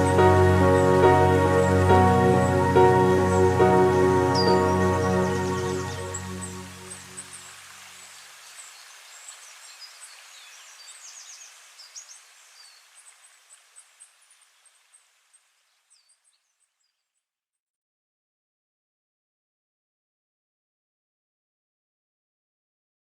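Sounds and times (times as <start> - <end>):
steady outdoor hiss: 0.0 - 17.0
small birds chirping: 0.0 - 17.2.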